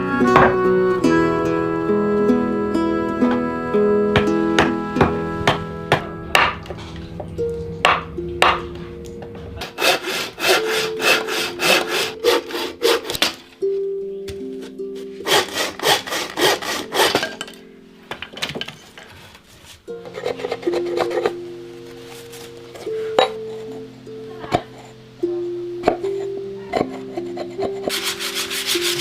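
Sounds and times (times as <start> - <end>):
hand saw cutting wood: 9.6 - 13.4, 15.2 - 17.4, 20.0 - 21.3, 26.9 - 29.0.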